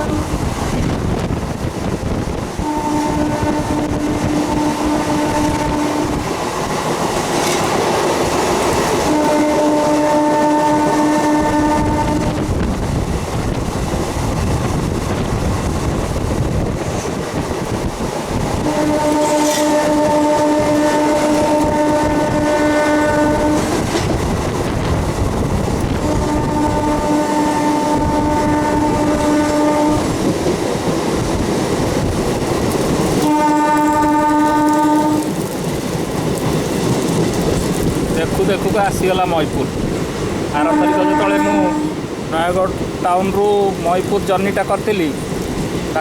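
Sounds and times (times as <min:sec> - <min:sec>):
train horn blasts: 0:00.0 - 0:00.5, 0:02.6 - 0:06.4, 0:09.0 - 0:12.7, 0:18.5 - 0:24.1, 0:25.9 - 0:30.2, 0:33.2 - 0:35.4, 0:40.5 - 0:42.1
train running rumble: 0:00.0 - 0:46.0.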